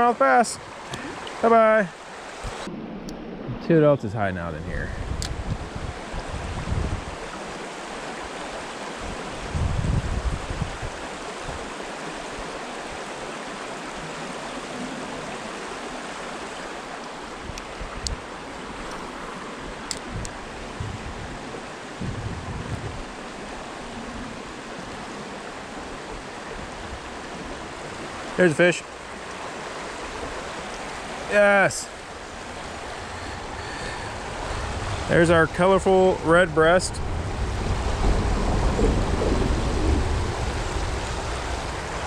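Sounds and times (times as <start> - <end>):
creek water flowing: 0.0 - 42.0
low rumbles: 2.4 - 7.1, 31.8 - 42.0.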